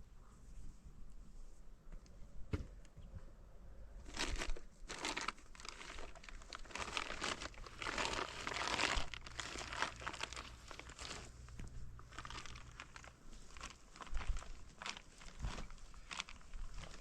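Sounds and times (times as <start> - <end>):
crinkling and rustling: 4.0 - 17.0.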